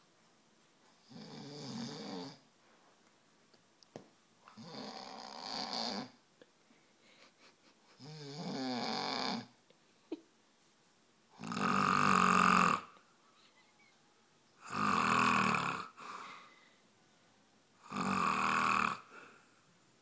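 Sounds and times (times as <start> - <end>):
man snoring: 1.1 - 2.4, 4.6 - 6.2, 8.0 - 9.5, 11.4 - 12.9, 14.6 - 16.2, 17.8 - 19.1.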